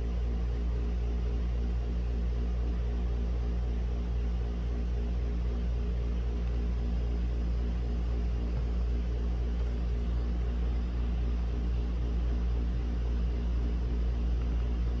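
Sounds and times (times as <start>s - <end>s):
low droning hum: 0.0s - 15.0s.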